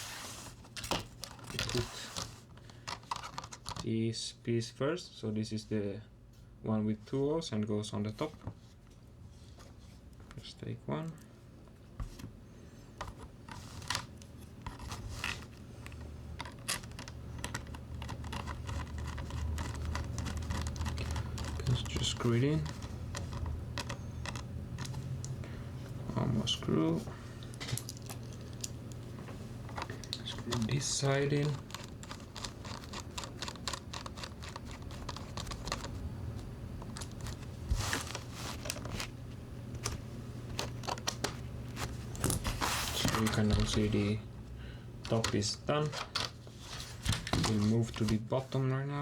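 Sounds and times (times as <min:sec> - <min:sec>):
low steady hum: 0:00.0 - 0:49.0
plastic parts clicking together: 0:02.5 - 0:03.9, 0:13.0 - 0:25.4, 0:27.5 - 0:36.0, 0:39.7 - 0:41.4.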